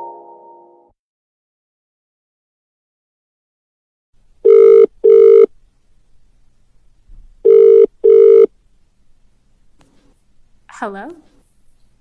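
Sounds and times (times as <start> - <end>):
telephone double ring: 7.4 - 8.5.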